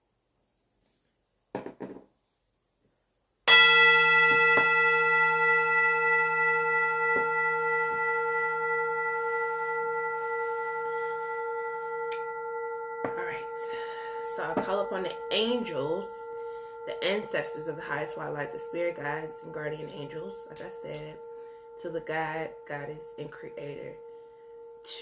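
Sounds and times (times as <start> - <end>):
metal bell struck and ringing: 3.5 - 25.0
soft rustle: 9.1 - 12.0.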